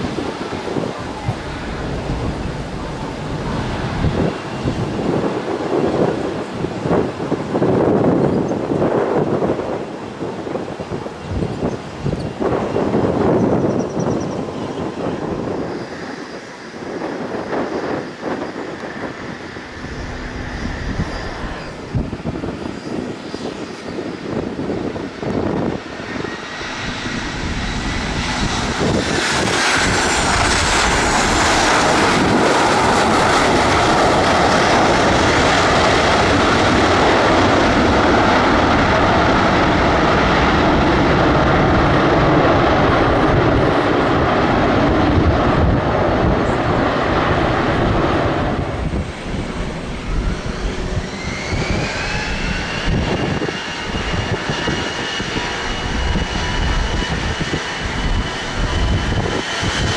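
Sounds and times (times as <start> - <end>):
aircraft engines roaring: 0.0 - 59.9
falling high whine: 17.5 - 24.5, 46.4 - 59.9.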